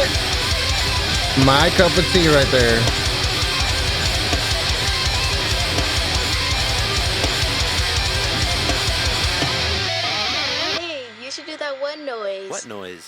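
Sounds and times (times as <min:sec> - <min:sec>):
fast driving drums: 0:00.0 - 0:10.1
distorted electric guitars: 0:00.0 - 0:11.4.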